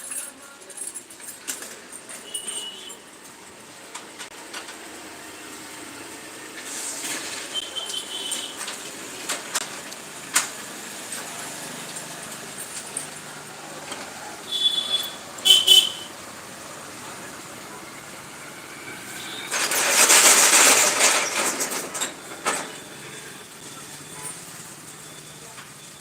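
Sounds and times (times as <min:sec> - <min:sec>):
vehicle horn toots: 0:02.2 - 0:03.0, 0:07.5 - 0:08.6, 0:14.5 - 0:16.1, 0:19.1 - 0:19.6.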